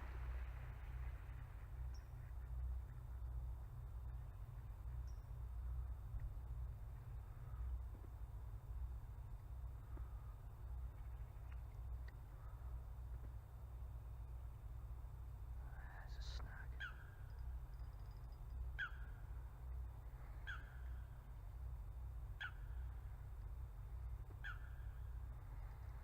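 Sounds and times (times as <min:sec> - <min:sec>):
steady low rumble: 0:00.0 - 0:26.0
bird calling: 0:16.1 - 0:19.3, 0:20.2 - 0:21.1, 0:22.3 - 0:23.0, 0:24.3 - 0:25.2.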